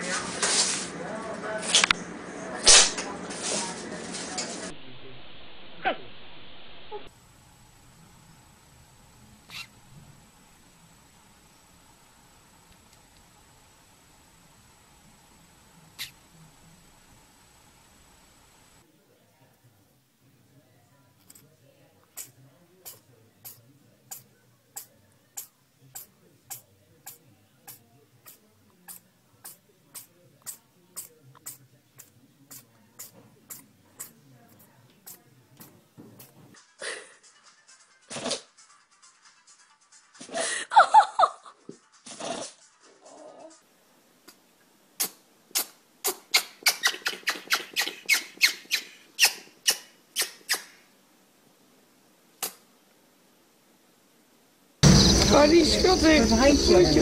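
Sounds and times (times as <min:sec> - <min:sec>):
faint low hum: 0:00.9 - 0:36.6
animal sneezing: 0:22.2 - 0:34.2, 0:42.1 - 0:42.6, 0:45.0 - 0:50.8, 0:52.4 - 0:52.6.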